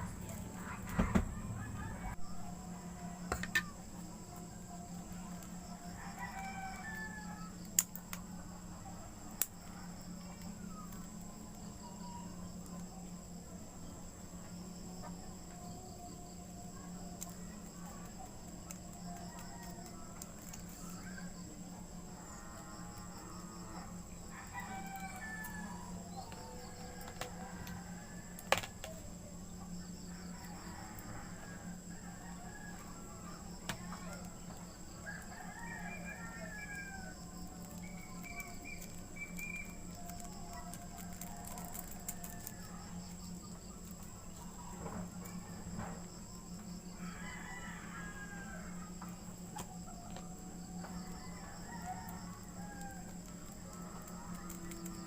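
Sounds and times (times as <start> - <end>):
rooster crowing: 0.0 - 4.4, 5.3 - 7.8, 19.0 - 28.7, 30.1 - 43.6, 46.9 - 49.2, 50.6 - 55.0
steady low hum: 0.0 - 47.2.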